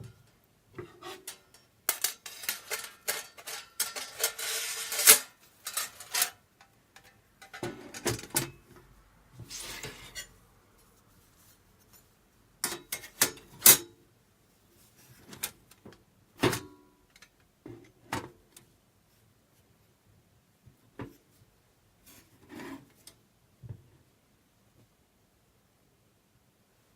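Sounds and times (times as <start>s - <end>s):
metal scraping slide: 0.8s - 6.4s
metal parts knocking and clinking: 1.2s - 6.4s.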